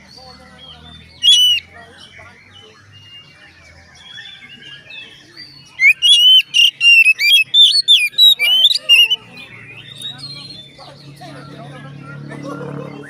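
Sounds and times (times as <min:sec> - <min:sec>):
bird singing whistled notes: 0:01.1 - 0:01.7, 0:04.1 - 0:10.8.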